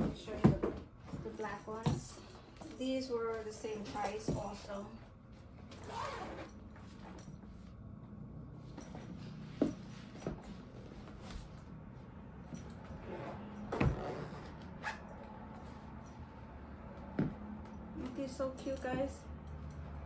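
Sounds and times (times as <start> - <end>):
soft knocks and handling noises: 0.0 - 5.8, 8.7 - 11.8, 15.5 - 19.8
low room hum: 0.0 - 20.0.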